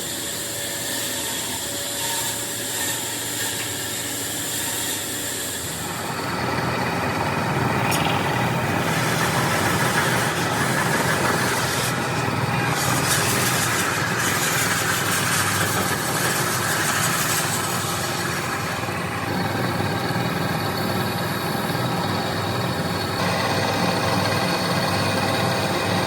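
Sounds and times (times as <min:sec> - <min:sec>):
machine humming: 0:05.8 - 0:26.0.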